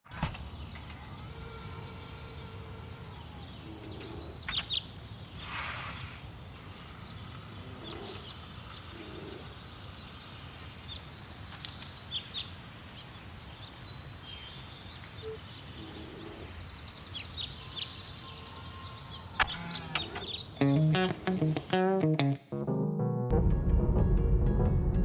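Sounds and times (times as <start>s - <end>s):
low outdoor background noise: 0.0s - 21.8s
small birds chirping: 0.3s - 21.8s.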